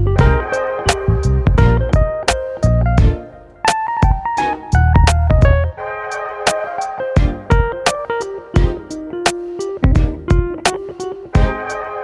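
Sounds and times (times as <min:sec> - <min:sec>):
low drum thumps: 0:00.0 - 0:03.3, 0:04.0 - 0:05.7, 0:07.2 - 0:07.9, 0:08.6 - 0:08.9, 0:09.8 - 0:10.6, 0:11.4 - 0:11.6
plucked guitar notes: 0:00.0 - 0:12.0
sharp percussive hits: 0:06.5 - 0:11.8.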